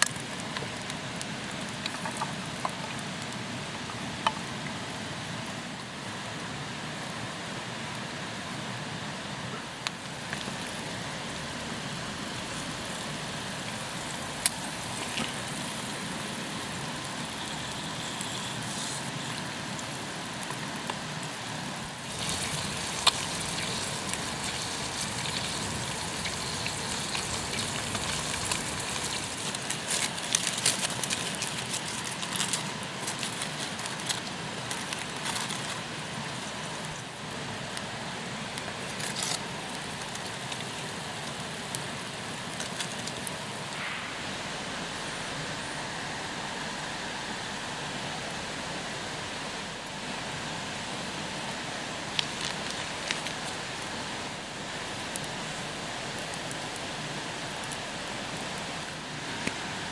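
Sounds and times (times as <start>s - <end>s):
campfire crackling and popping: 0.0s - 8.2s, 9.7s - 44.0s, 51.0s - 59.9s
food sizzling in a pan: 10.2s - 21.3s, 21.9s - 35.7s.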